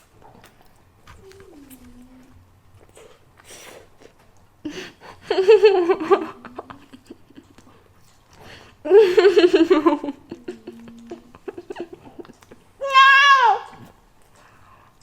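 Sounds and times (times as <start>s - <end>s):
woman giggling: 4.7s - 7.8s, 8.8s - 12.7s
woman humming: 9.8s - 11.9s.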